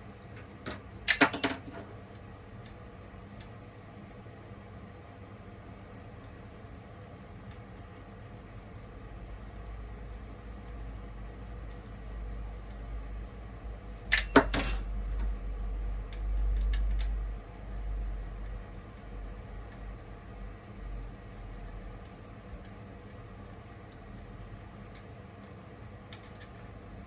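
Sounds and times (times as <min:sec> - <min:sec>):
steady low hum: 0:00.0 - 0:27.0
metallic clinks: 0:01.1 - 0:01.6, 0:14.1 - 0:14.9.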